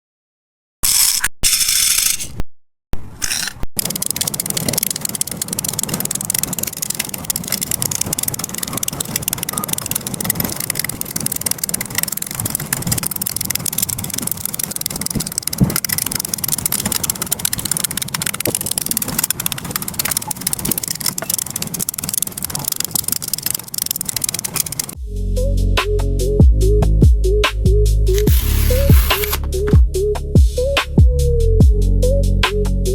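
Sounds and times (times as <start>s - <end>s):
plastic beads clicking and rattling: 3.3s - 25.0s, 28.1s - 29.8s.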